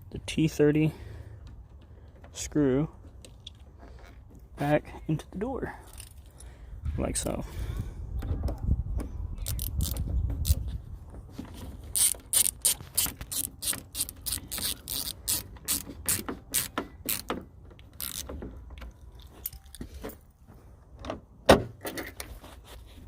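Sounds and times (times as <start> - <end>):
dull handling noise: 8.1 - 23.0
ratchet clicks: 9.4 - 10.6, 11.9 - 18.4.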